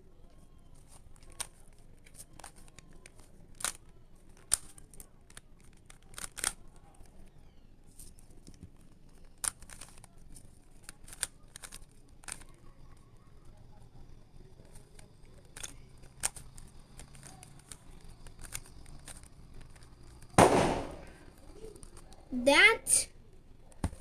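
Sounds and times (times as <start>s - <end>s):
plastic puzzle pieces clicking: 0.7s - 7.1s, 8.0s - 12.6s, 14.6s - 20.4s.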